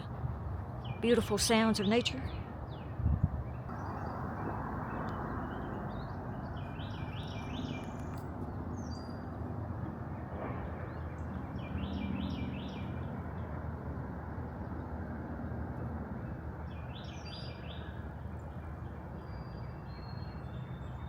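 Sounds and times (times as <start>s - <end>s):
distant city traffic rumble: 0.0s - 21.0s
songbird singing: 0.7s - 13.6s, 16.2s - 21.0s.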